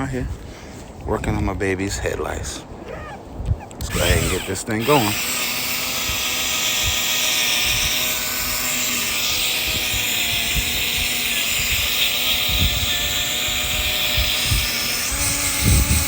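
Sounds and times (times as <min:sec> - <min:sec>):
wind buffeting microphone: 0:00.0 - 0:16.0
cordless drill sanding plastic: 0:03.8 - 0:16.0.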